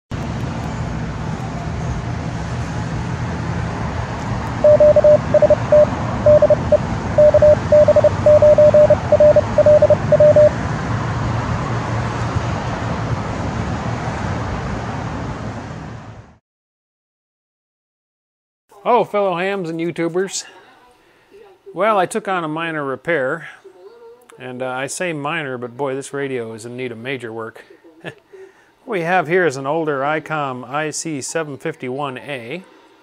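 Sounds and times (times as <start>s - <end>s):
morse code tone: 4.6s - 10.6s.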